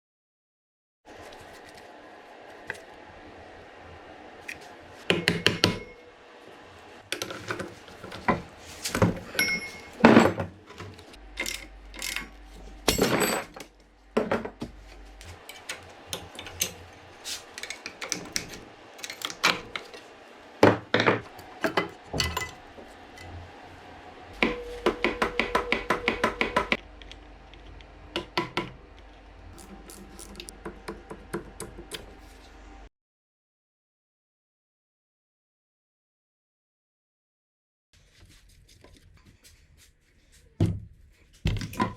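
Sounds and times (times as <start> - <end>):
tools clinking on metal parts: 9.2 - 13.7, 15.4 - 16.9, 17.5 - 19.9, 21.7 - 22.7.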